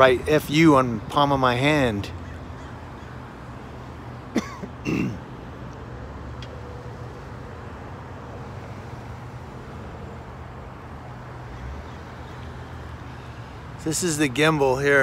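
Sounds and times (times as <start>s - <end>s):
man clearing his throat: 4.4s - 5.2s.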